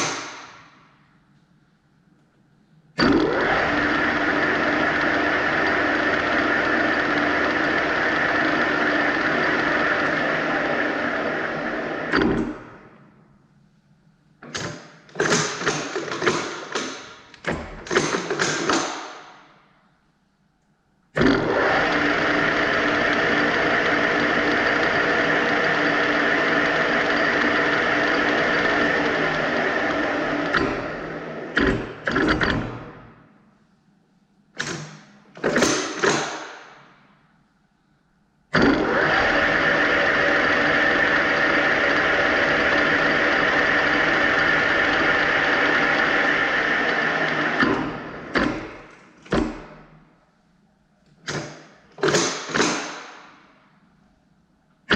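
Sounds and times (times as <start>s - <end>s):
metal lathe hum and whine: 21.4s - 31.2s.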